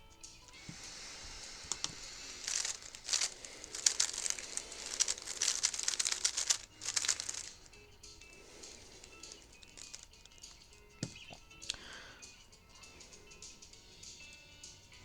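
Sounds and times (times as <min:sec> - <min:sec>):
plastic puzzle cube clicking: 0:01.4 - 0:07.6, 0:08.6 - 0:11.4.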